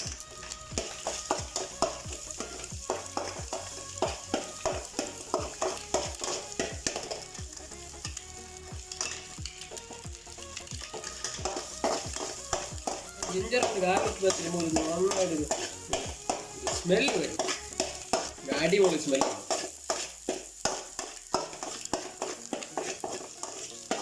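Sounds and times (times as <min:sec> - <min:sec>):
food sizzling in hot oil: 0:00.0 - 0:24.0
spatula stirring in a pan: 0:00.0 - 0:24.0.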